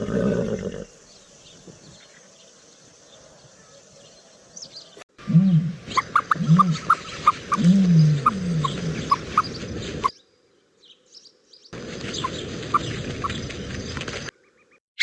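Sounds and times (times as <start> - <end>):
animal low deep calls: 5.2 - 9.6.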